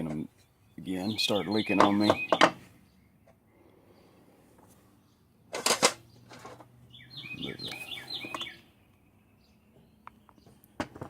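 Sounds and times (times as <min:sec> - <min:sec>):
bird chirping high notes: 0:00.7 - 0:03.1, 0:06.9 - 0:09.6.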